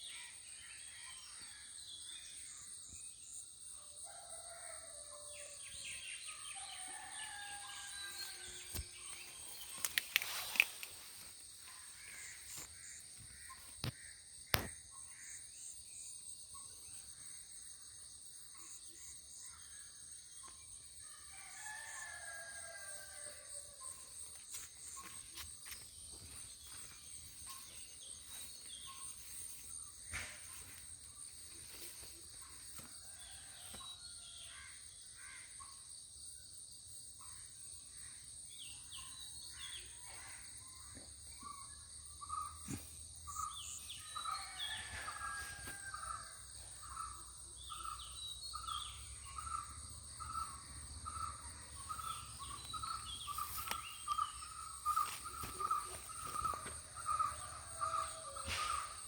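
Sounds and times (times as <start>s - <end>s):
faint rooster crowing: 4.0s - 5.6s, 6.5s - 8.9s, 21.1s - 24.2s, 42.7s - 47.1s, 51.9s - 59.0s
shrill insect chorus: 4.0s - 59.0s.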